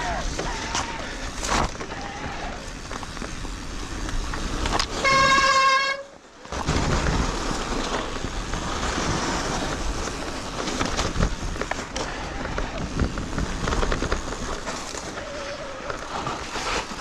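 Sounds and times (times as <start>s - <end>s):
wind rush and riding noise: 0.0s - 17.0s
horn-like beep: 5.0s - 6.1s.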